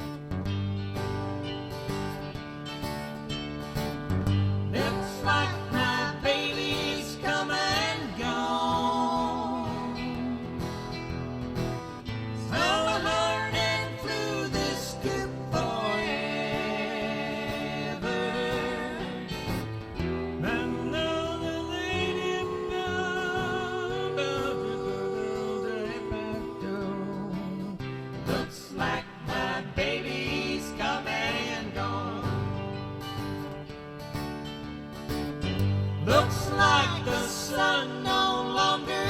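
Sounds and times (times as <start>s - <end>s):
acoustic guitar: 0.0s - 39.0s
group singing in harmony: 4.7s - 11.2s, 12.0s - 33.4s, 36.0s - 39.0s.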